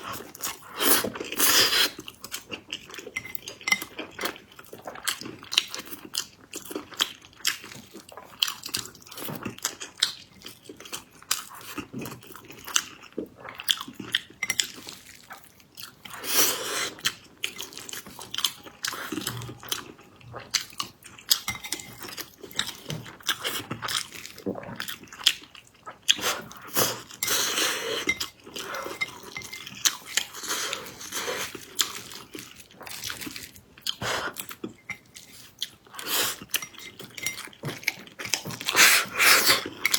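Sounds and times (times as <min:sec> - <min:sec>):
person chewing sticky food: 0:00.0 - 0:39.9.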